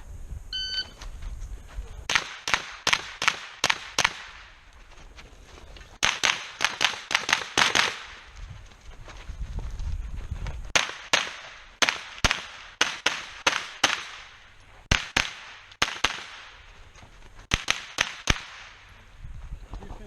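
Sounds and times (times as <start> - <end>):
rifle shots: 2.1 - 4.5, 6.0 - 8.2, 10.7 - 16.6, 17.5 - 18.9.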